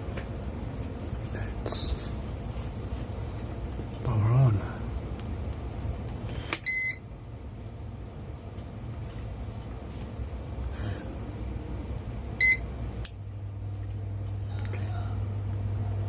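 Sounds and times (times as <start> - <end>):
fan motor hum: 0.0 - 16.0
buzzer beeps: 6.6 - 7.0, 12.4 - 12.6.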